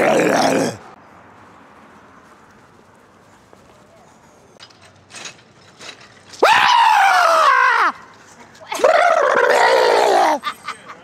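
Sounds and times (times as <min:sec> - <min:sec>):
person screaming in fright: 0:06.4 - 0:08.0, 0:08.8 - 0:10.4.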